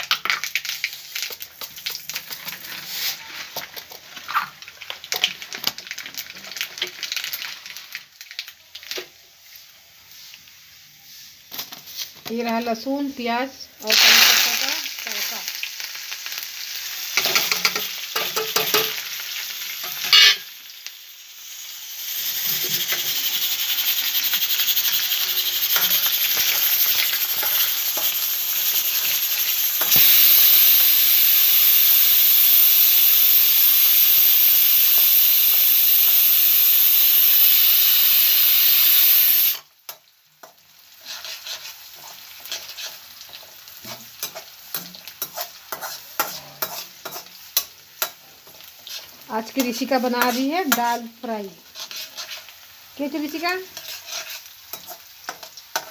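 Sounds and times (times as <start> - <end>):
food sizzling in hot oil: 0.0 - 55.9
spoon clinking and scraping pan: 17.2 - 19.0, 19.8 - 20.5, 39.9 - 51.0, 51.7 - 52.5, 53.3 - 55.9.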